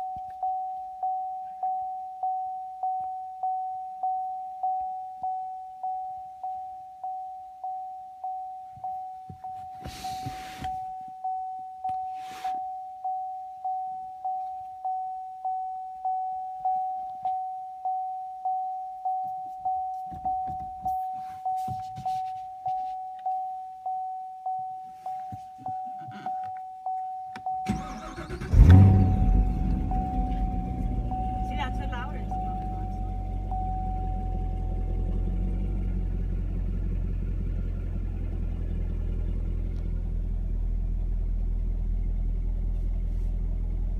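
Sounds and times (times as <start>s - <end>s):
car warning chime dinging: 0.0s - 35.9s
faint knocks and rustles: 20.0s - 23.3s
car engine cranking and starting: 27.6s - 43.9s.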